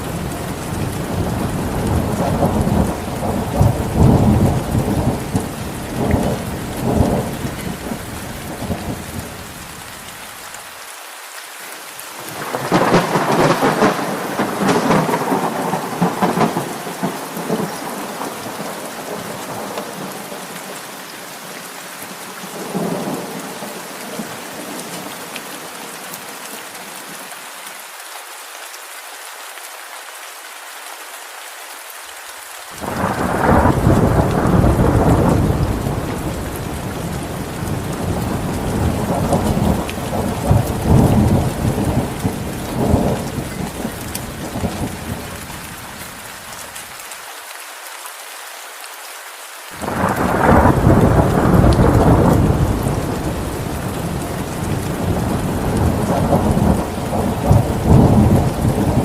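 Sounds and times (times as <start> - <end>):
thunder rumbling: 0.0 - 9.4, 12.3 - 20.4, 32.8 - 45.4, 49.8 - 59.0
steady rain: 0.0 - 59.0.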